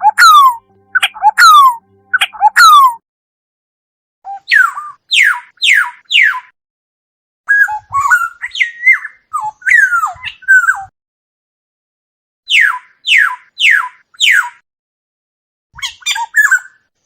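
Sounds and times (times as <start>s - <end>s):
oriole fluty whistled calls: 0.0s - 3.0s, 4.3s - 6.5s, 12.5s - 14.6s.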